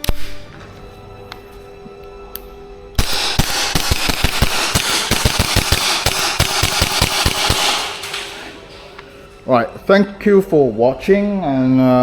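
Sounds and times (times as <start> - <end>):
steady hiss: 0.0 - 10.9
airsoft gun rapid shots: 3.0 - 8.5.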